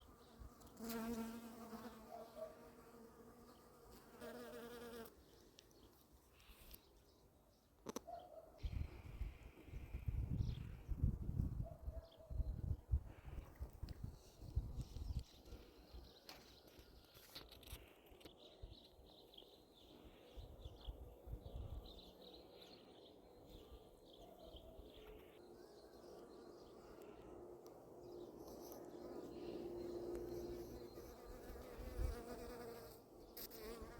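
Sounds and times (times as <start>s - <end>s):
bee buzzing past: 0.1s - 5.2s, 30.1s - 33.9s.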